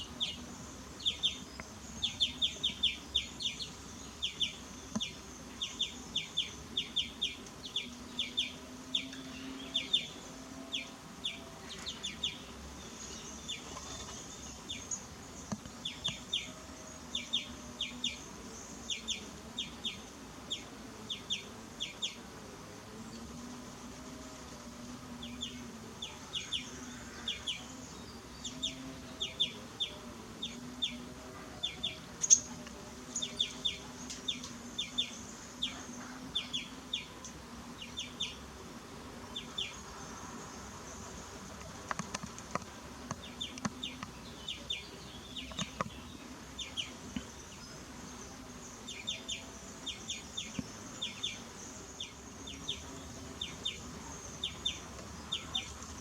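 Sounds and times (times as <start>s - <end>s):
birds chirping: 41.9s - 56.0s
faint high buzz: 42.6s - 56.0s.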